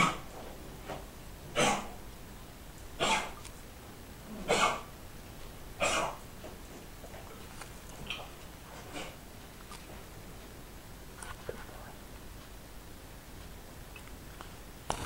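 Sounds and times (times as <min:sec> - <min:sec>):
dog coughing: 0:00.0 - 0:00.3, 0:01.5 - 0:02.0, 0:03.0 - 0:03.4, 0:04.3 - 0:04.9, 0:05.8 - 0:06.3, 0:08.1 - 0:09.2.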